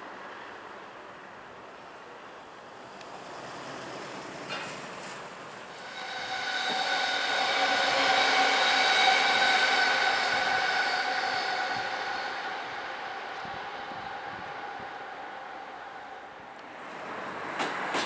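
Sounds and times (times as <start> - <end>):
electric train motors whining: 5.7 - 16.4.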